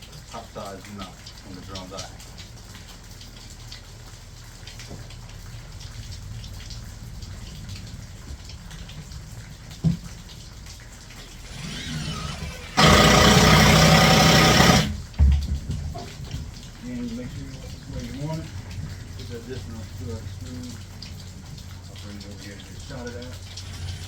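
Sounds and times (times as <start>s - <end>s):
rain pattering: 0.0s - 24.0s
impact driver driving screw: 11.3s - 15.0s.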